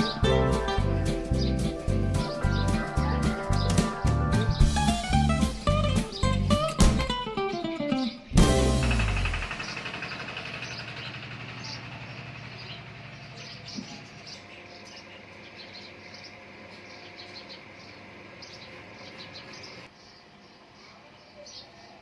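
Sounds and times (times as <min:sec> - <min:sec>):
guitar chord ringing: 0:00.0 - 0:09.6.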